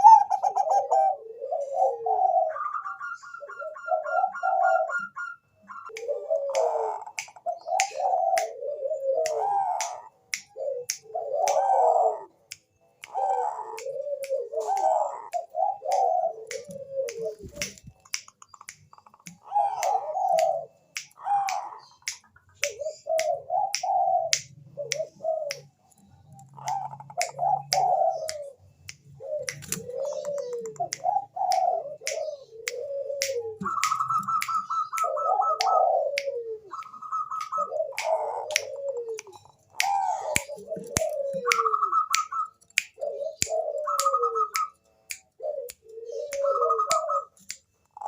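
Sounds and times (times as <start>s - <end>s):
dove cooing: 0.0s - 12.4s, 13.1s - 18.0s, 19.3s - 48.0s
sharp clicks: 12.5s - 48.0s.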